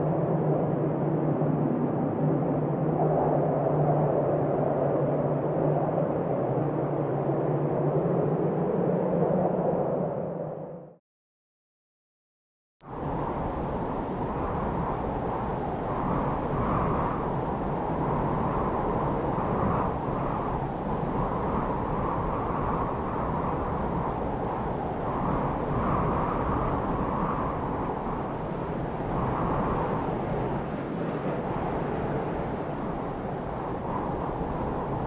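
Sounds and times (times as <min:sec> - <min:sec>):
rush of wind: 0:00.0 - 0:11.0, 0:12.8 - 0:35.0.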